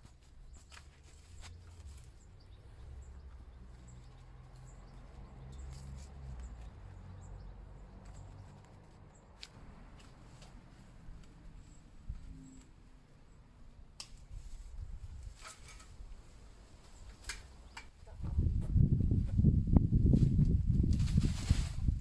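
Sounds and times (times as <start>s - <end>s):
foliage rustling and clicking: 0.0s - 7.1s, 13.9s - 18.0s.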